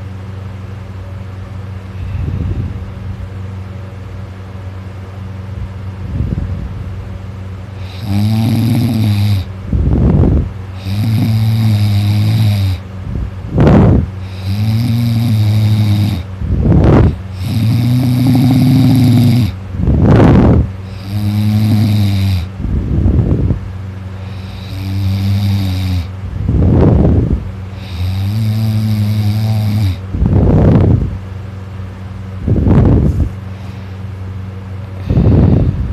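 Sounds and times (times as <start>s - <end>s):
person snoring loudly: 7.8s - 12.8s, 13.6s - 22.5s, 24.2s - 30.9s, 35.0s - 35.9s.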